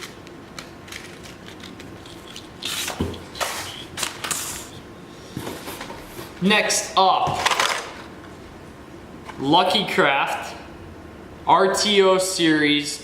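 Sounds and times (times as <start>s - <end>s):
packaging rubbing and scraping: 0.9s - 4.8s.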